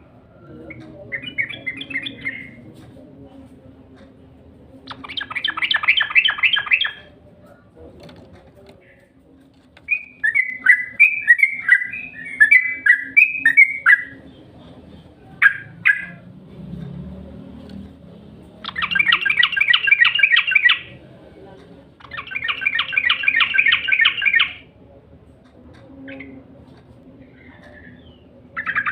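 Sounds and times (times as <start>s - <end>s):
bulbul singing: 0.0s - 2.8s, 4.8s - 7.2s, 9.8s - 16.3s, 18.4s - 24.7s, 27.3s - 28.9s.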